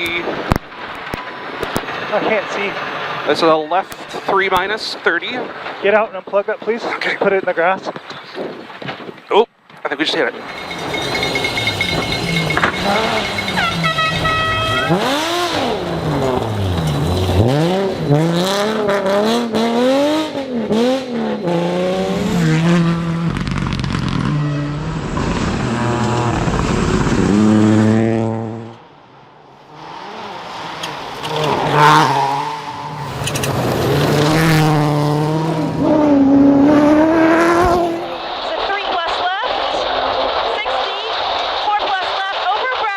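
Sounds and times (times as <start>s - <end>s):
rally car engines revving: 10.2s - 38.5s.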